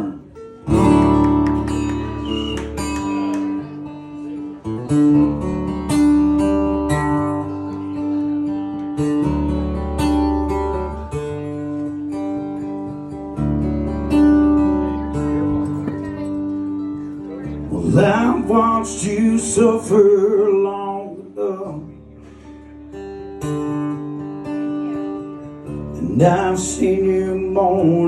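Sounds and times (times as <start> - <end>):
bass line: 0.0 - 7.7, 13.1 - 20.5
acoustic guitar strumming: 0.0 - 28.0.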